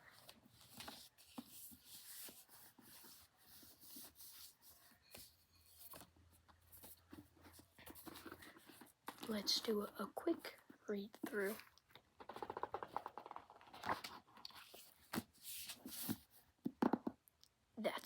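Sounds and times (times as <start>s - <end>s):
fingers tapping and scratching book: 0.0s - 17.2s.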